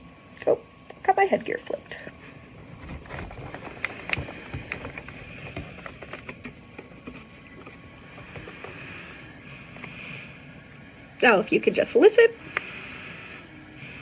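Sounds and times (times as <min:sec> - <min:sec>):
mask rustling: 0:02.3 - 0:10.4
pressurised air blowing: 0:03.6 - 0:14.0.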